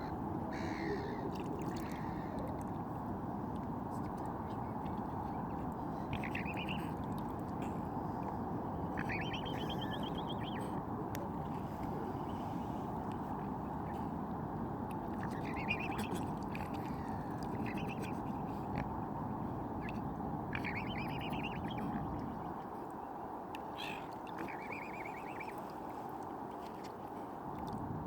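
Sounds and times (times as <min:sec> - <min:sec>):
low rushing background noise: 0:00.0 - 0:28.0
small bird chattering: 0:09.0 - 0:10.6, 0:15.2 - 0:16.2.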